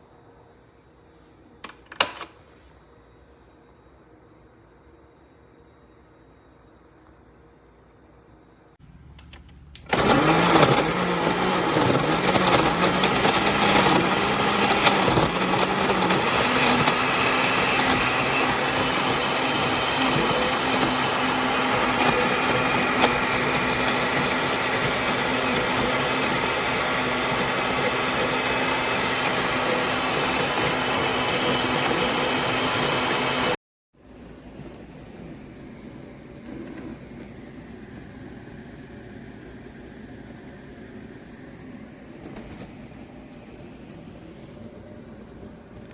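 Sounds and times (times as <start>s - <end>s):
blender motor humming: 9.8s - 33.6s.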